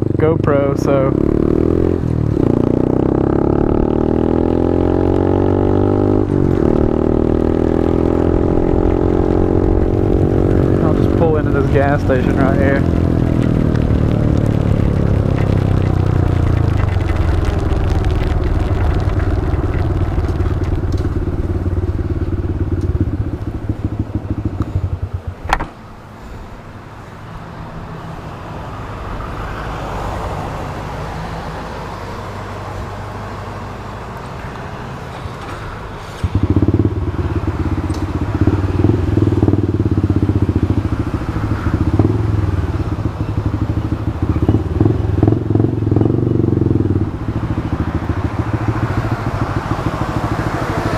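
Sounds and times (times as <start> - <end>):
motorcycle engine running: 0.0 - 26.0, 36.2 - 50.9.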